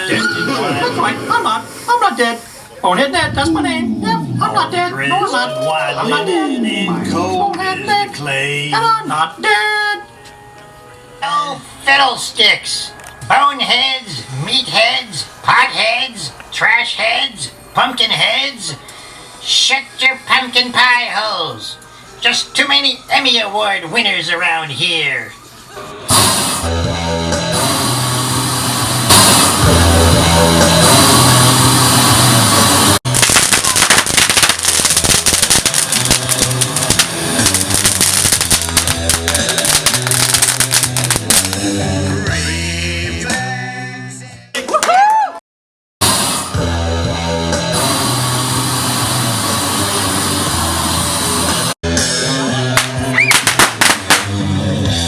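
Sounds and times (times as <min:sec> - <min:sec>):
rock music with guitar and drums: 0:26.3 - 0:33.0, 0:34.0 - 0:44.2, 0:46.1 - 0:55.0.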